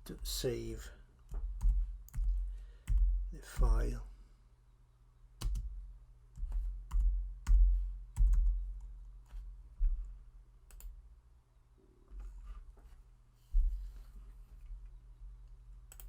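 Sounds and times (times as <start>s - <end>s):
keyboard and mouse clicks: 1.3s - 3.0s, 5.4s - 5.7s.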